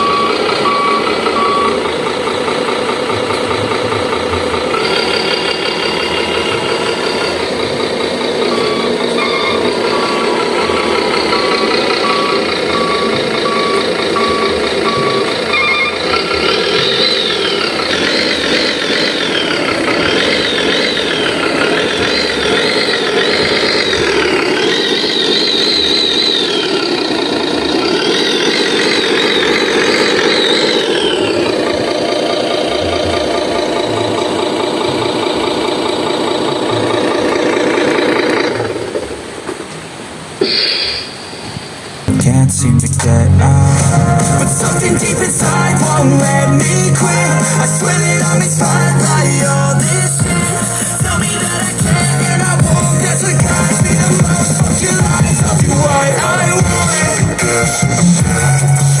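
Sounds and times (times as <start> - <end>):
warbling electronic tones: 0.0 - 38.6, 40.4 - 58.9
simulated truck engine: 0.0 - 59.0.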